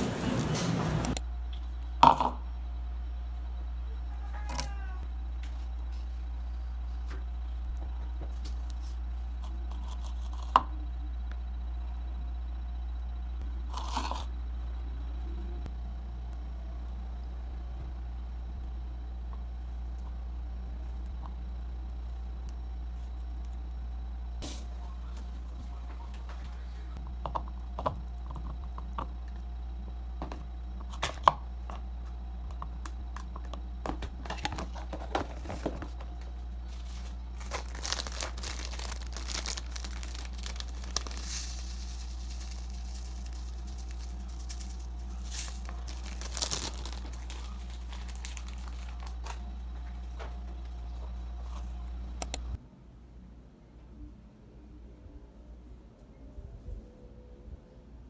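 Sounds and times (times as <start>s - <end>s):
low hum: 0.0s - 58.0s
crinkling rustling handling noises: 34.2s - 52.2s.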